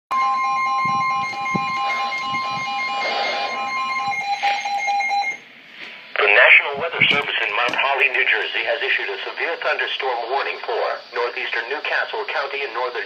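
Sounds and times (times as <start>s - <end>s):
rapidly pulsing beep: 0.1s - 5.4s
high-pitched alarm tone: 0.1s - 5.5s.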